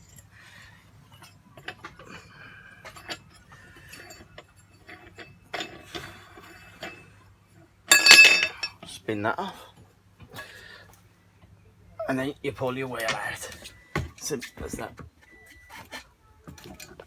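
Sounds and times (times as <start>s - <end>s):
metallic clicks and clinks: 7.9s - 8.7s.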